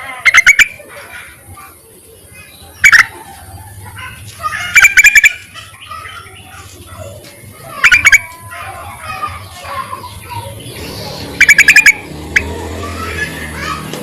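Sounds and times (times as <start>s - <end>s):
faint bird chattering: 0.0s - 13.9s
bulbul bubbly call bursts: 0.2s - 0.8s, 4.8s - 5.4s, 7.8s - 8.3s, 11.4s - 12.6s.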